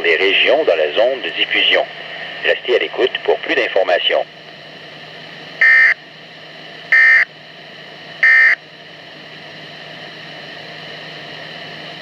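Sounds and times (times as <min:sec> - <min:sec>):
radio receiver hiss and hum: 0:00.0 - 0:06.1, 0:06.8 - 0:07.3, 0:08.2 - 0:08.7
warbling data tone bursts: 0:05.6 - 0:06.0, 0:06.9 - 0:07.2, 0:08.2 - 0:08.6.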